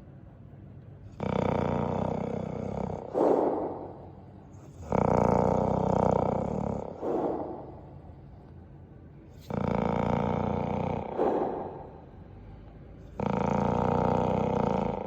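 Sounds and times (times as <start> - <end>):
dog snoring: 1.1 - 4.0, 4.6 - 8.0, 9.4 - 12.2, 13.0 - 15.0.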